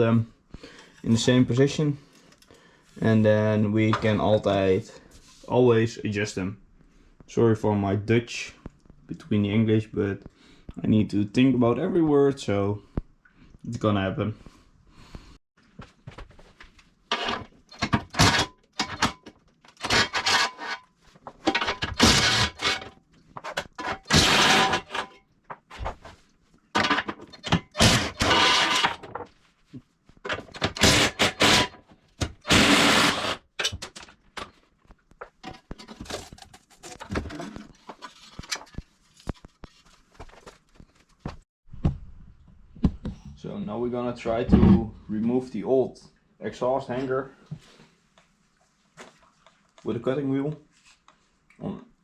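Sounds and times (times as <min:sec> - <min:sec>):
clattering and scraping: 0:15.8 - 0:29.5, 0:35.2 - 0:41.4.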